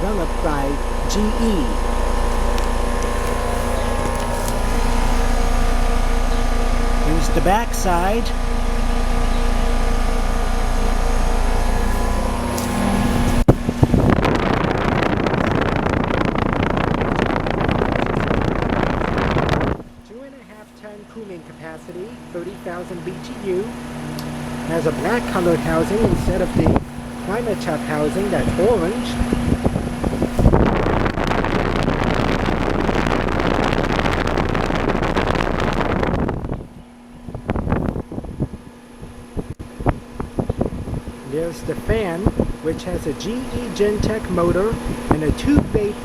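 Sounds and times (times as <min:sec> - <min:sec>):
air conditioner unit humming: 0:00.0 - 0:46.0
wind buffeting microphone: 0:00.0 - 0:46.0
steady rushing noise: 0:09.8 - 0:20.6.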